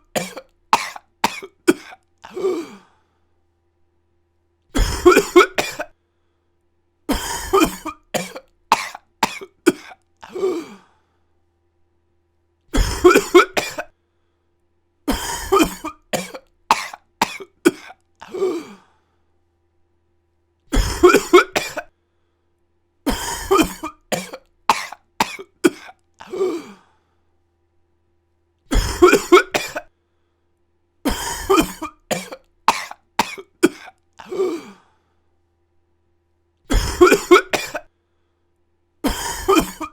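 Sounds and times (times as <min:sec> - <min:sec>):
person coughing: 0:00.0 - 0:02.9, 0:04.8 - 0:06.0, 0:07.1 - 0:10.9, 0:12.7 - 0:13.9, 0:15.1 - 0:18.8, 0:20.7 - 0:21.9, 0:23.1 - 0:26.9, 0:28.7 - 0:29.9, 0:31.1 - 0:34.9, 0:36.7 - 0:37.9, 0:39.0 - 0:39.9.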